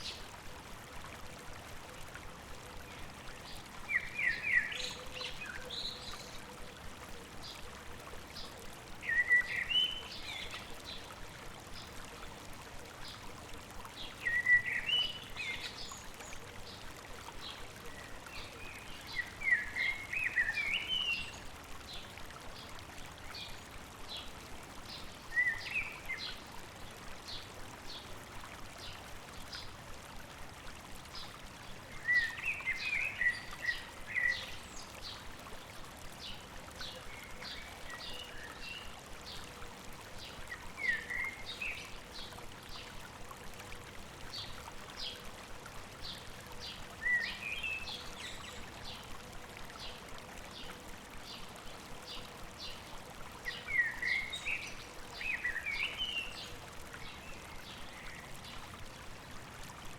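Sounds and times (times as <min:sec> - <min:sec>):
stream running: 0:00.0 - 0:59.9
bird song: 0:02.9 - 0:06.5, 0:08.4 - 0:11.1, 0:14.0 - 0:16.8, 0:17.4 - 0:22.7, 0:24.9 - 0:26.4, 0:31.9 - 0:35.3, 0:36.2 - 0:39.4, 0:40.2 - 0:43.0, 0:46.0 - 0:49.1, 0:49.8 - 0:58.6.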